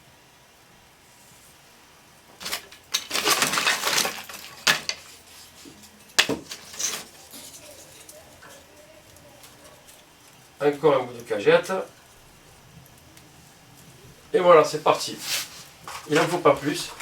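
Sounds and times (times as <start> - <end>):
wooden slats clattering and knocking: 2.4 - 8.7.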